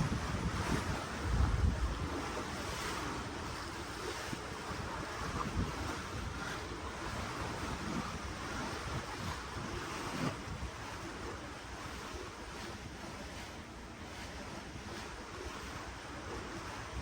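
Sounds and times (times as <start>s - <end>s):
sea water rushing: 0.0s - 17.0s
wind on microphone: 0.0s - 17.0s.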